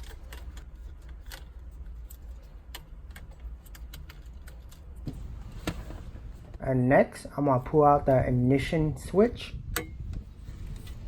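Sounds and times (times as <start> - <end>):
plastic and wiring clicks and rattles: 0.0 - 5.2.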